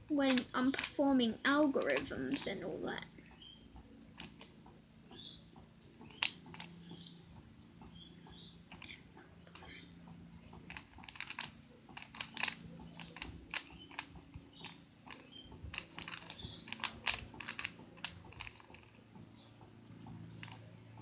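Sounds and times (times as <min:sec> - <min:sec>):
puzzle cube plastic clicks: 0:00.2 - 0:01.0, 0:01.6 - 0:02.6, 0:04.1 - 0:04.6, 0:06.0 - 0:07.0, 0:10.6 - 0:19.0, 0:20.3 - 0:20.7.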